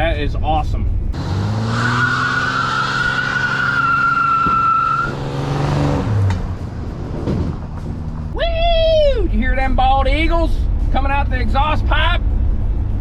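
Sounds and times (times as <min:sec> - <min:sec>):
pickup engine revving: 0:01.2 - 0:08.3
tyres squealing: 0:01.4 - 0:05.2.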